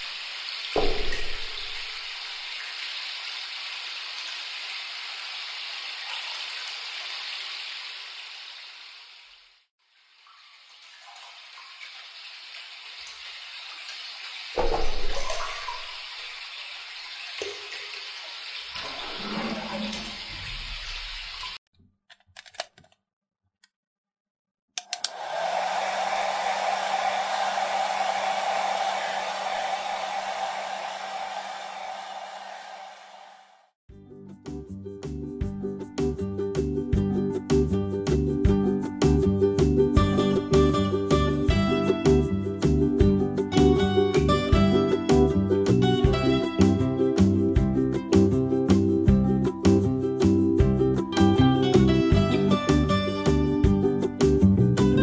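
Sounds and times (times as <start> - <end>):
water running from tap: 0.0 - 21.6.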